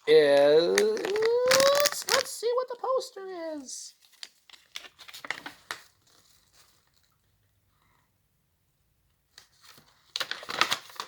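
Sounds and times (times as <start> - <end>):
paper crinkling and tearing: 0.3 - 2.3, 4.0 - 7.1, 9.4 - 11.0.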